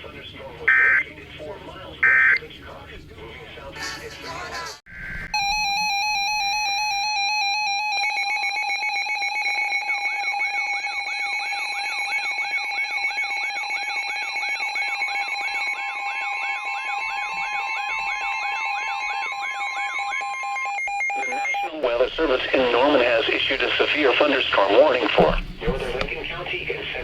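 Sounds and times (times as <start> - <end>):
warbling alarm sweep: 4.9 - 21.8
steady alarm tone: 4.9 - 27.0
rapidly pulsing multi-tone beep: 5.3 - 22.7.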